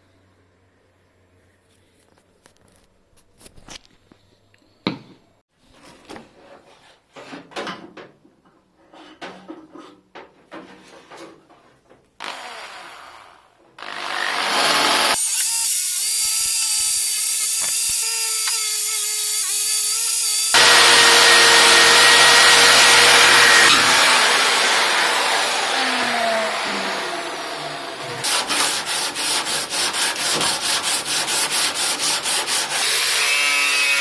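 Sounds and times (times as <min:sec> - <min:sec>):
power tool grinding metal: 0:13.9 - 0:34.0.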